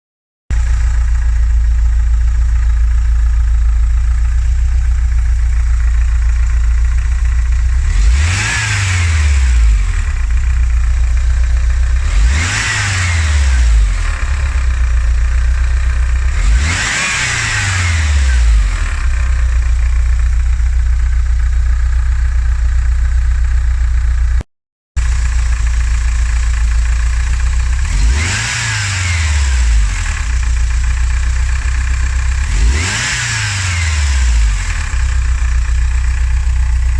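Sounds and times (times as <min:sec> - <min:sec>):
engine idling with rattle: 0:00.5 - 0:24.4, 0:25.0 - 0:36.9
engine revving: 0:07.6 - 0:20.0, 0:27.2 - 0:36.9.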